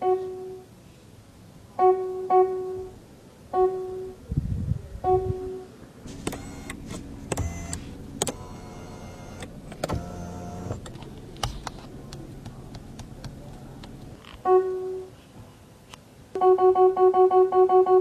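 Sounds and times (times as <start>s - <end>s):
motor switch click: 6.1s - 11.8s
small electric motors whirring: 6.1s - 11.8s.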